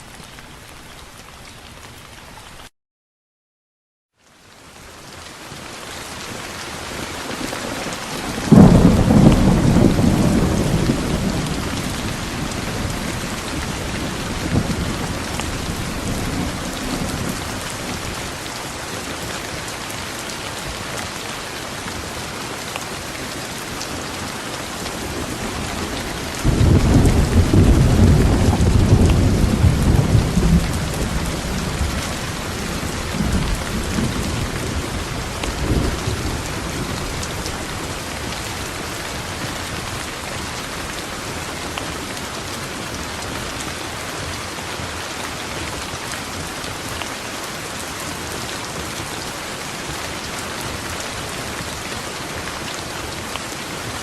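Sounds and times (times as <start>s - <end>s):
steady rain: 0.0s - 2.7s, 4.2s - 54.0s
thunder clap and rumble: 7.3s - 18.5s, 24.8s - 38.7s.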